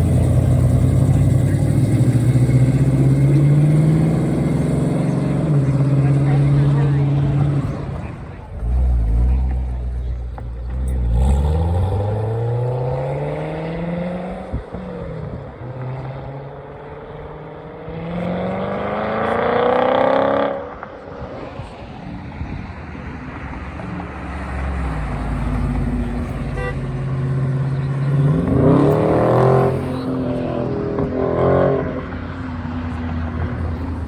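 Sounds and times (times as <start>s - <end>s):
low engine rumble: 0.0s - 15.6s
car revving up: 0.0s - 21.0s, 23.6s - 34.0s
car engines accelerating hard: 0.0s - 34.0s.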